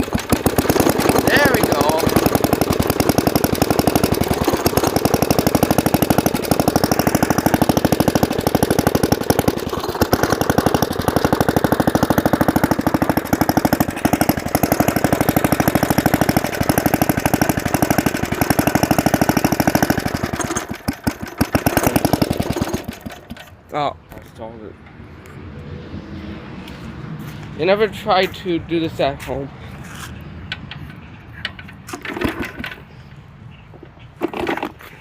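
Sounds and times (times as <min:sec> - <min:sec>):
small engine running and stalling: 0:00.0 - 0:23.6, 0:31.5 - 0:33.0, 0:34.2 - 0:35.0.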